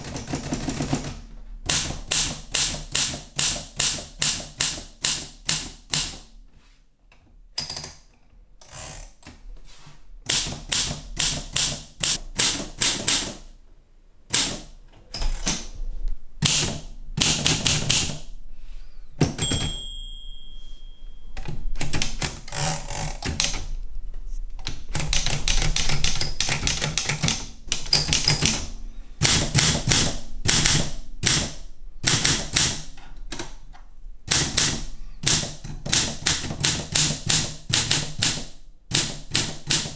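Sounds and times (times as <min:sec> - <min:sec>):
typewriter key strikes: 0:01.7 - 0:06.3, 0:10.3 - 0:13.5, 0:14.3 - 0:15.7, 0:16.4 - 0:18.3, 0:19.2 - 0:20.6, 0:21.3 - 0:23.8, 0:24.6 - 0:33.6, 0:34.3 - 0:39.9
typewriter bell ringing: 0:19.4 - 0:23.2.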